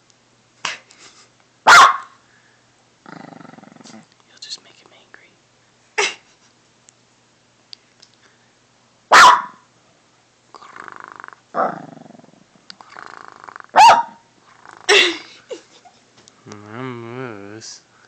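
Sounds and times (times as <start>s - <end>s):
dog barking sharply: 1.7s - 2.2s, 9.1s - 9.6s, 13.7s - 14.2s
small dog growling: 3.0s - 4.1s, 10.6s - 13.8s, 14.4s - 15.1s.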